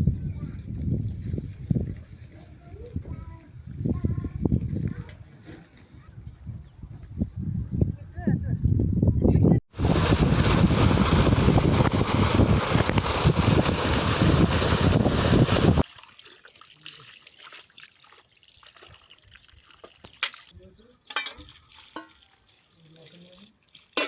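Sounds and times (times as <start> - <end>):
running water rushing: 9.7 - 15.8.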